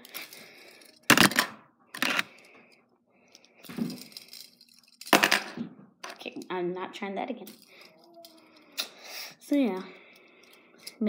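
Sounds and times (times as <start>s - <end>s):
plastic pieces clattering: 0.0s - 2.5s, 3.6s - 6.2s.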